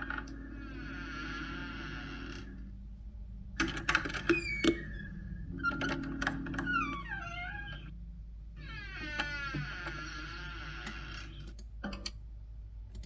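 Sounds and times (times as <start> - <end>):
squeaky falling glides: 3.6 - 8.0.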